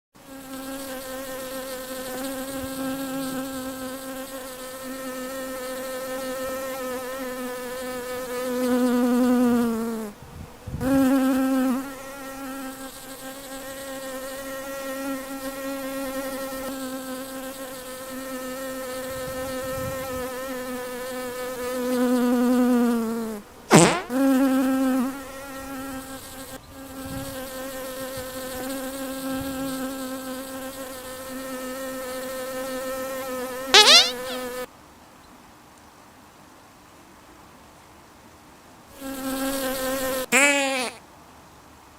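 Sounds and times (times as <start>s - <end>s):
bee buzzing: 0.2s - 34.7s, 39.0s - 41.0s
brief sweeping sound: 33.8s - 34.4s.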